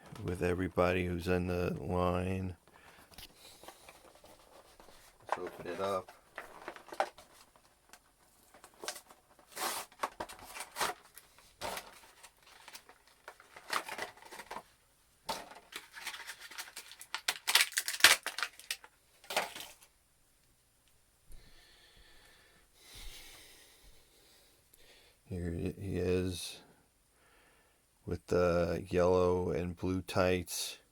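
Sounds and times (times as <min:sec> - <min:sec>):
packaging tearing and crinkling: 0:05.3 - 0:14.7, 0:15.3 - 0:19.9.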